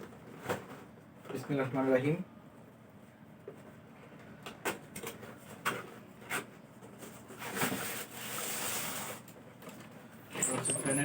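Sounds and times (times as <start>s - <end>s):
cardboard scraping and rustling: 5.4s - 9.2s.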